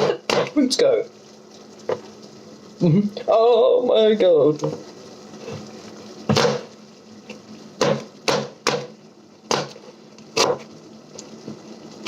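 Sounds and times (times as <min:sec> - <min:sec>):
knife chopping on board: 0:00.0 - 0:00.6, 0:06.3 - 0:06.7, 0:07.8 - 0:08.9, 0:09.5 - 0:09.8, 0:10.4 - 0:10.6.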